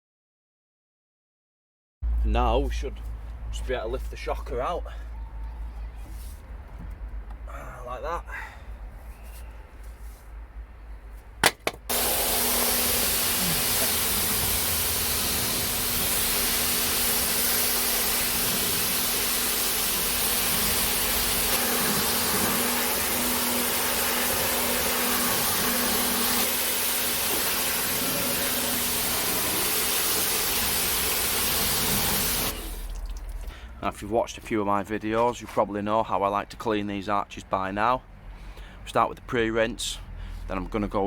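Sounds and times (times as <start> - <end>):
machine rushing hiss: 11.9 - 32.8.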